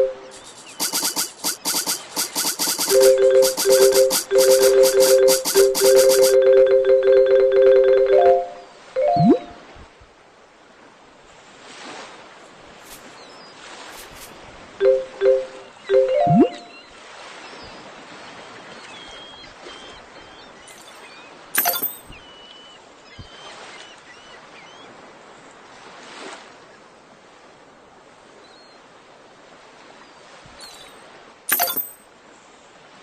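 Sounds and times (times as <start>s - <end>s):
faint high chirps: 0.0s - 6.4s, 21.6s - 22.1s, 31.5s - 32.0s
sea surf: 0.0s - 7.2s
loud sharp clatter: 0.3s - 6.4s, 21.6s - 22.0s.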